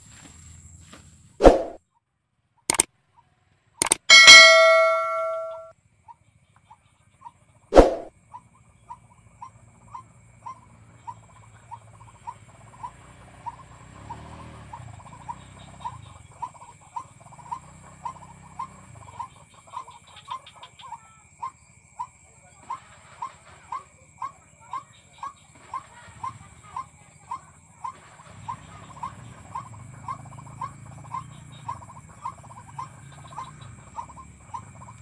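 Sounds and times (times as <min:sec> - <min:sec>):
waterhen call: 0:03.8 - 0:05.6, 0:22.5 - 0:35.0
sharp knock: 0:03.8 - 0:05.7, 0:07.8 - 0:08.1.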